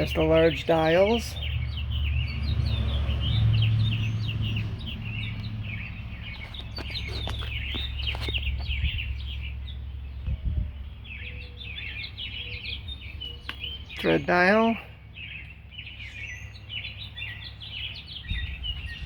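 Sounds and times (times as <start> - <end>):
small birds chirping: 0.0 - 19.0
low steady rumble: 7.5 - 13.9.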